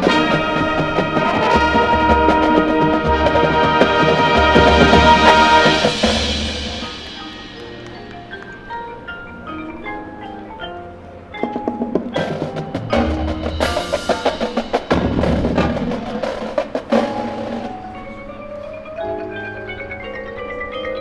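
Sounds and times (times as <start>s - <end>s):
glockenspiel: 0.0s - 21.0s
marimba and xylophone notes: 0.0s - 21.0s.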